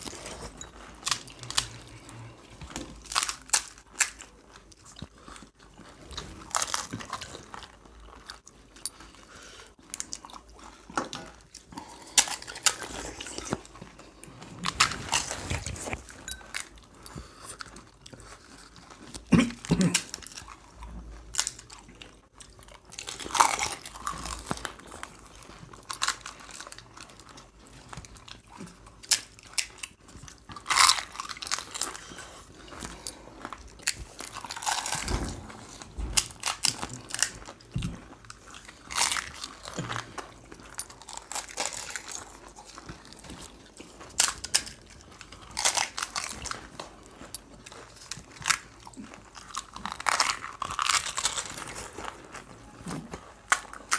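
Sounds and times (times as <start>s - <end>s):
crisp snack crunching: 0.0s - 53.9s
wet chewing: 0.0s - 53.9s.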